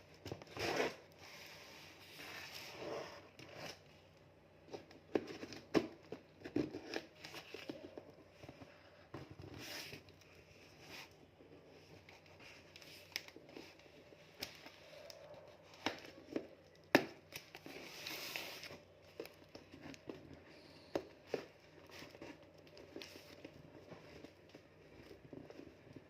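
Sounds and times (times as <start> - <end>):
packaging crinkling and tearing: 12.0 - 20.4.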